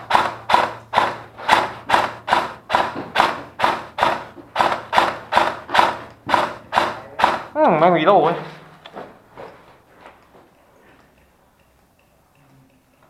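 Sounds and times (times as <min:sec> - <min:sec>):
footsteps on hard surface: 0:08.2 - 0:11.2.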